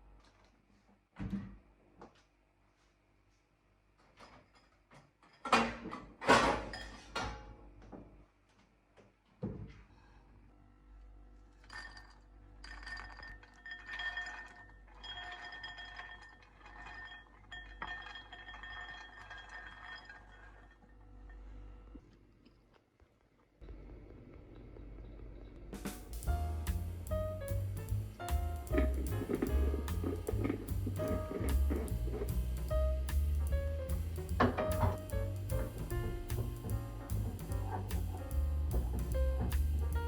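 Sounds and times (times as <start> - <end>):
glassware and dishes clinking: 6.3 - 7.4, 11.6 - 20.8.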